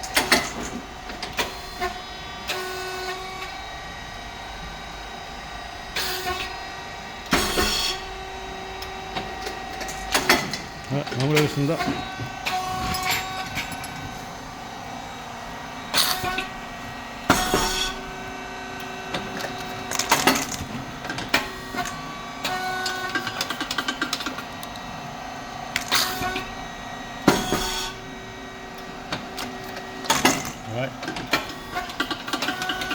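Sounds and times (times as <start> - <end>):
hydraulic pump and fan hum: 0.0 - 32.9.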